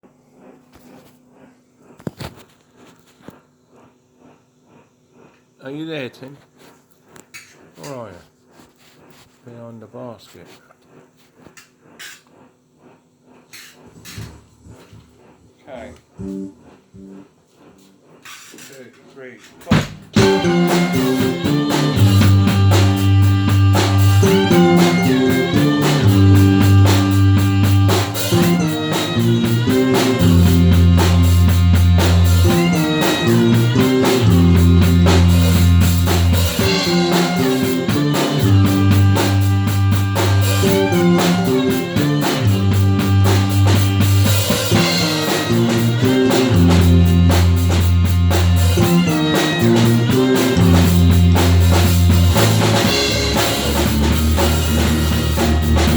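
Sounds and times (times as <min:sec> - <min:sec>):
blues music with electric guitar: 0:20.2 - 0:55.9.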